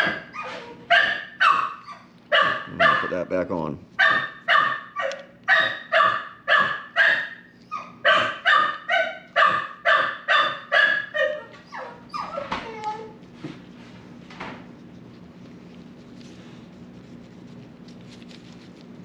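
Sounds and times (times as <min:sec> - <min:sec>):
puppy yipping and whining: 0:00.0 - 0:03.1, 0:04.0 - 0:13.2
puppy barking: 0:00.0 - 0:03.3, 0:04.0 - 0:12.8.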